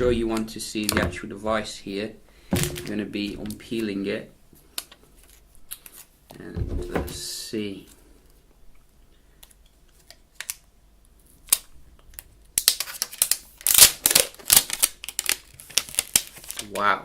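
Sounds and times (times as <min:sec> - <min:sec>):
plastic film peeling: 0:11.3 - 0:16.9.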